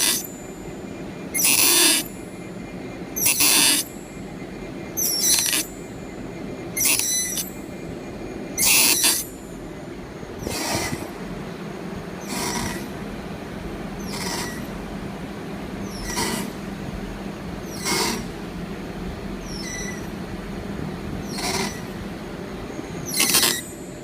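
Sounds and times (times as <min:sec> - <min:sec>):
metal cutting noise: 0:00.0 - 0:07.7, 0:08.5 - 0:09.4, 0:12.2 - 0:13.0, 0:14.0 - 0:14.7, 0:23.1 - 0:23.8
machine hum: 0:00.0 - 0:24.0.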